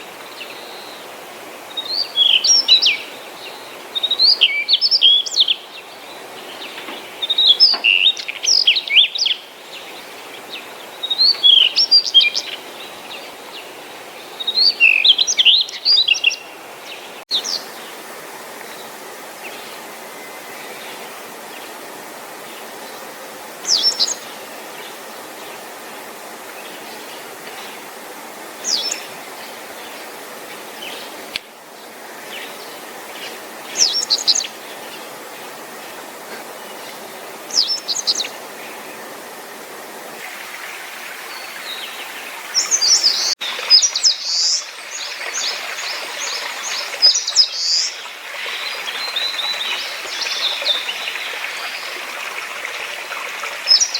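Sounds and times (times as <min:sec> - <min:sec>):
songbird warbling: 0:40.3 - 0:52.4
high bird calls: 0:41.2 - 0:52.4.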